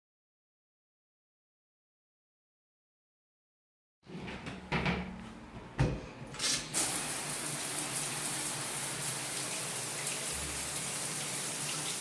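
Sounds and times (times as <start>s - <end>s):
running water pouring: 6.7s - 12.0s.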